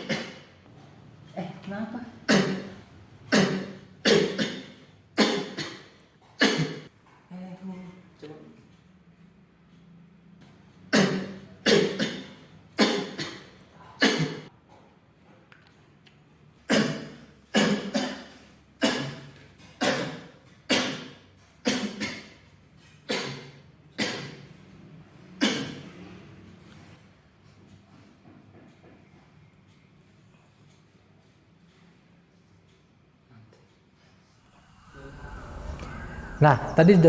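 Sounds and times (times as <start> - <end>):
person coughing: 0.0 - 0.5, 2.3 - 6.9, 10.9 - 14.5, 16.7 - 22.4, 23.1 - 24.4, 25.4 - 25.9.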